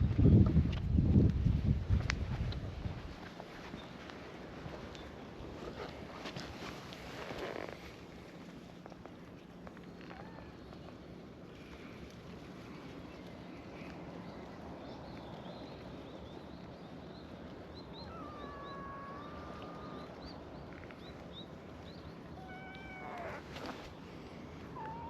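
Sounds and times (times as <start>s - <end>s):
cats meowing: 18.0s - 20.2s, 22.3s - 23.7s, 24.8s - 25.0s.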